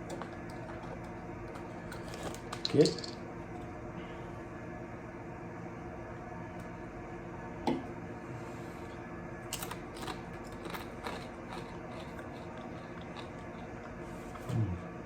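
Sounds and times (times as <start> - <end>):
steady low hum: 0.0 - 15.0
person chewing crunchy chip: 9.7 - 13.8.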